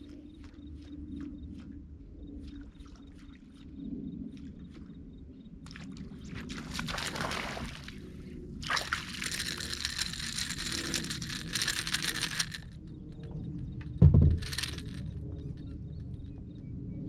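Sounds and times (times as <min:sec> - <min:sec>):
water sloshing and trickling: 0:05.7 - 0:13.3.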